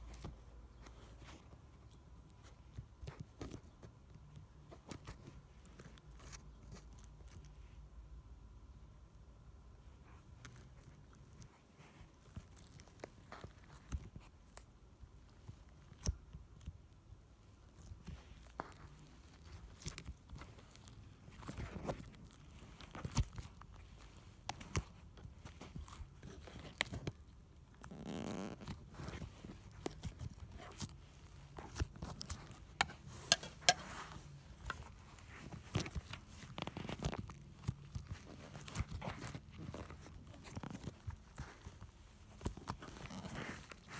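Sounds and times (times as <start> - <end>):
slime squishing crackles: 9.9 - 43.9.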